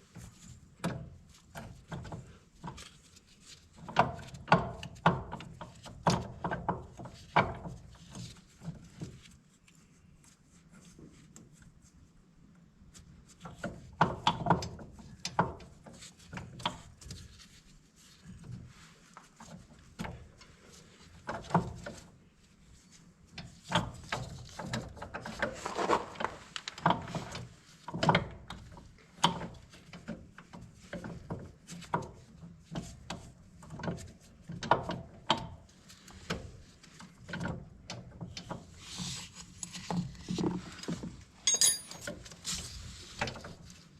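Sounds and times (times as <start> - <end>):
hand tools on metal: 41.5 - 42.1.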